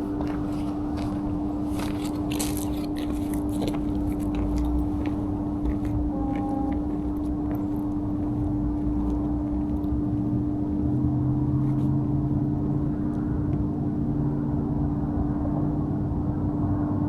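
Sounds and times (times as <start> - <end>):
steady mechanical drone: 0.0 - 17.0
lower tone: 4.6 - 17.0.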